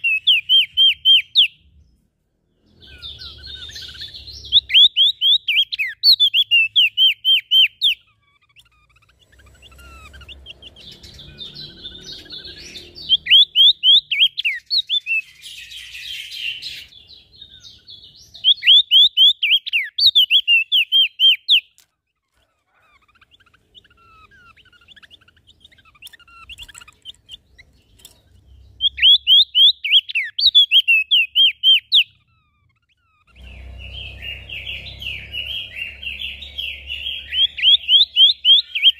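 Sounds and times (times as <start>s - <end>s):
birds twittering and chattering: 0.0s - 38.9s
songbirds singing falling notes: 0.0s - 38.9s.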